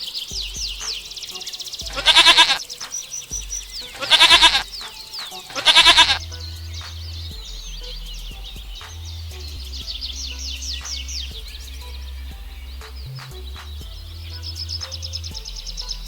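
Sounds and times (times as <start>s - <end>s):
birds chirping: 0.0s - 16.0s
goat bleating: 1.9s - 2.6s, 4.0s - 4.7s, 5.5s - 6.2s.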